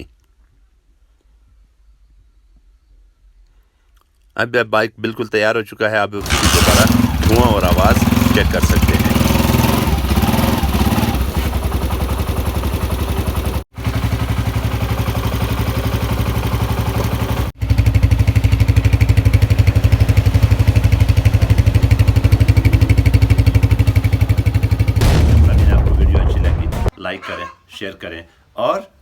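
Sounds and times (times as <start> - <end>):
motorcycle engine running: 6.2 - 26.9.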